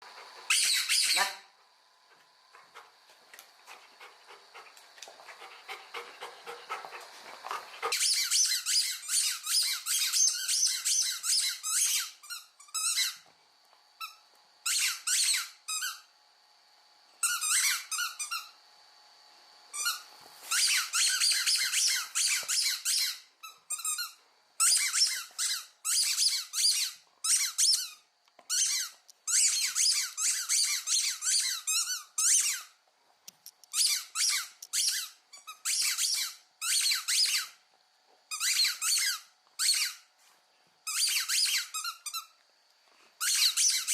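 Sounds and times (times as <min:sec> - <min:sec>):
squeaky dog toy squeaking: 0:00.5 - 0:01.4, 0:07.9 - 0:13.2, 0:17.2 - 0:18.5, 0:19.8 - 0:32.7, 0:33.7 - 0:37.6, 0:38.3 - 0:40.0, 0:40.9 - 0:42.3, 0:43.2 - 0:43.9.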